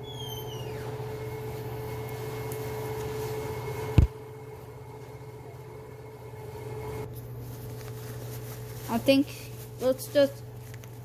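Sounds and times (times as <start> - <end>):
steady mechanical hum: 0.0 - 11.0.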